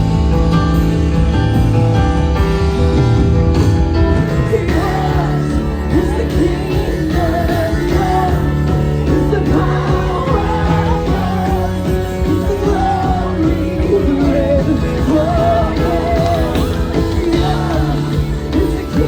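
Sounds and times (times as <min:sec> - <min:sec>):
band playing: 0:00.0 - 0:19.0
person singing: 0:04.2 - 0:19.0.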